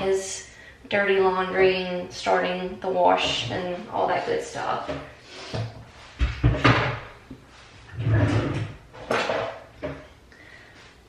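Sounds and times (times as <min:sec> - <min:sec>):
knocks and thuds of handling: 0:04.9 - 0:07.4.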